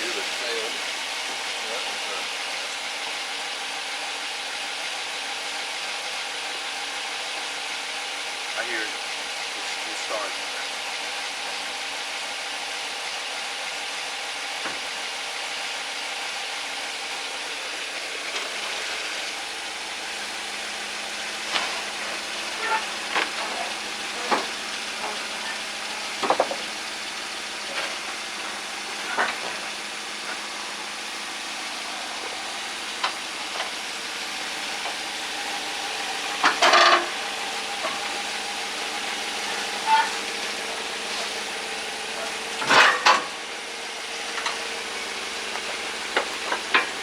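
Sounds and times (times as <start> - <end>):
car engine idling with tick: 0.0 - 47.0
rattling clank: 21.1 - 26.9, 27.6 - 30.5, 36.3 - 37.2, 42.5 - 43.4.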